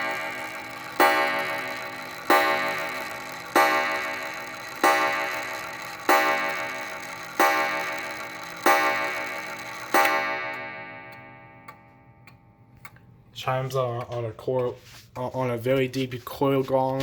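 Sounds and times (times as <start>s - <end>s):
clock striking a deep gong: 0.0s - 12.7s
clock ticking: 0.0s - 13.1s.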